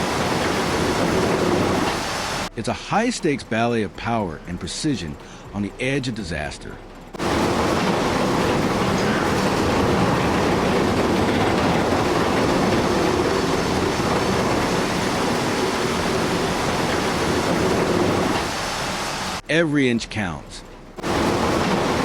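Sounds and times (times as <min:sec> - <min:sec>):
engine rumble: 0:00.0 - 0:19.5
mechanical clatter: 0:07.0 - 0:19.1, 0:20.7 - 0:22.0.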